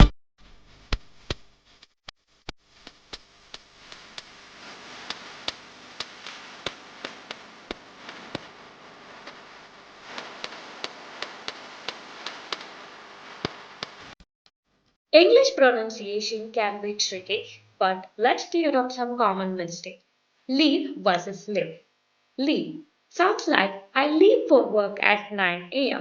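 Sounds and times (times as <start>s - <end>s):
faint hiss: 2.6s - 14.2s
sharp ticks: 10.2s - 12.8s.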